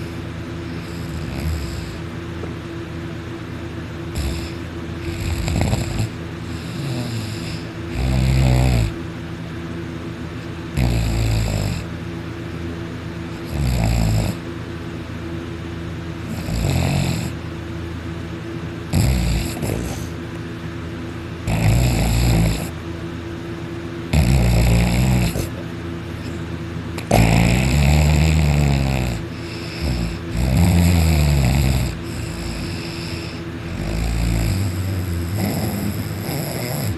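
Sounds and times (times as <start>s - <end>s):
person snoring loudly: 0.7s - 2.1s, 4.1s - 9.0s, 10.8s - 11.9s, 13.4s - 14.4s, 16.2s - 17.4s, 18.9s - 20.2s, 21.4s - 22.8s, 24.1s - 25.6s, 27.0s - 36.9s.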